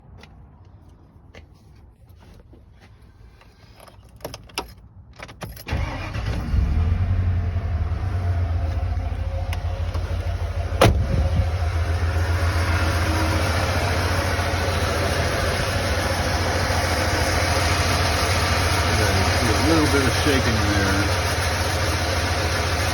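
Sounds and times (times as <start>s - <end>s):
car engine idling with misfire: 5.7s - 22.9s.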